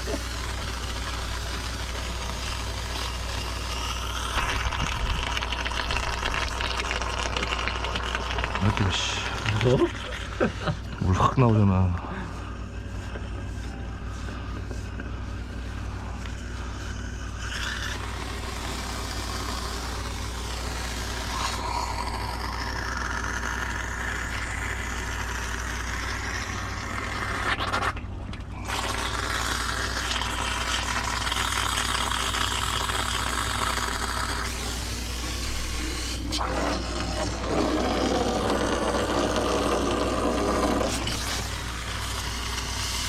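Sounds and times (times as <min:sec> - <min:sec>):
machine humming: 0:00.0 - 0:43.0
water spray rushing and hissing: 0:17.4 - 0:28.0, 0:28.6 - 0:43.0.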